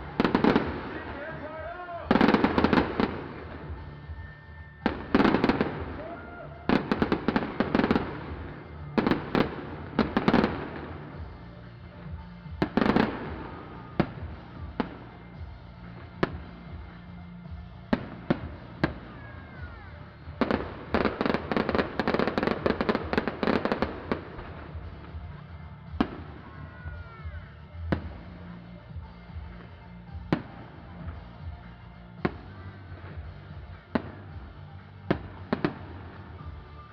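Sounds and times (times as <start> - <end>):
fireworks whistling: 0.0 - 25.3
fireworks bangs: 0.0 - 36.9
fireworks crackling: 0.0 - 36.9.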